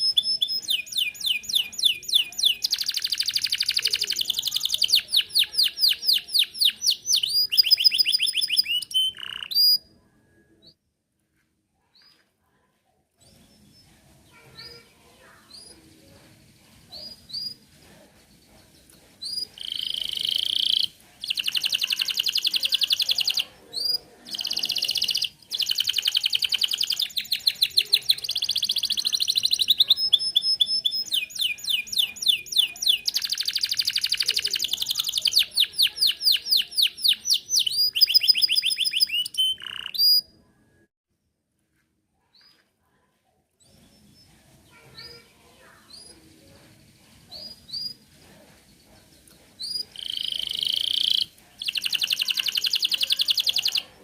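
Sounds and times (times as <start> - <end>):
canary singing trills: 0.0 - 10.8, 13.2 - 17.7, 18.6 - 40.5, 49.0 - 54.0.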